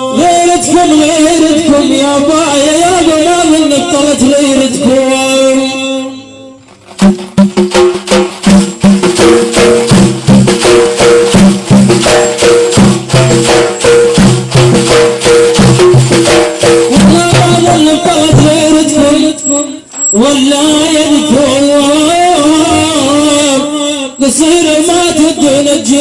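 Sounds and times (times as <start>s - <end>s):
instrumental melody: 6.2s - 21.5s
fast percussion beat: 6.8s - 23.7s
person singing: 16.9s - 26.0s.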